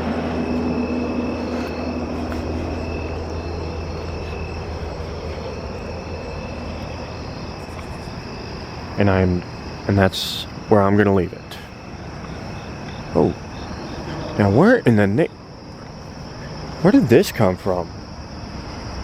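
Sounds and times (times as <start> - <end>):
crickets chirping: 0.0 - 19.0
low engine drone: 0.0 - 19.0.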